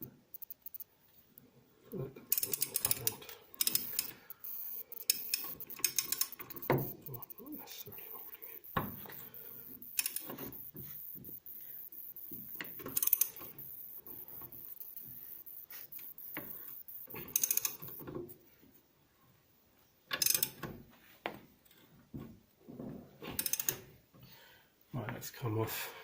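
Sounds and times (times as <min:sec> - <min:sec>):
hand ratchet clicking: 0:00.0 - 0:00.8, 0:02.3 - 0:18.0, 0:20.2 - 0:20.6, 0:23.4 - 0:23.8.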